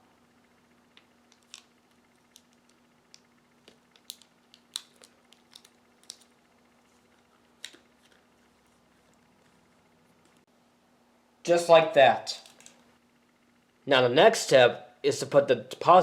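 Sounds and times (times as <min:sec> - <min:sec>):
faint steady hum: 0:00.0 - 0:16.0
tape clicks and crinkles: 0:00.9 - 0:10.5, 0:12.4 - 0:12.8.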